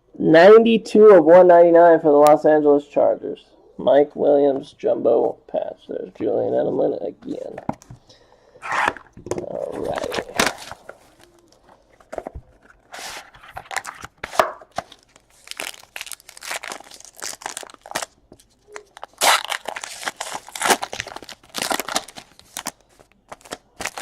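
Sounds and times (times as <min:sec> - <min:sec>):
packaging tearing and crinkling: 0:09.6 - 0:11.6, 0:12.9 - 0:24.0.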